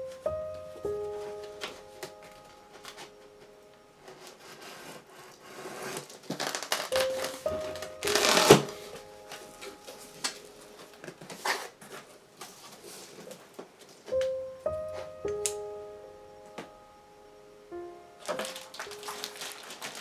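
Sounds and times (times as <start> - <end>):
soft piano music: 0.0 - 5.3, 6.4 - 20.0
packaging rustling: 1.2 - 14.2, 18.2 - 20.0.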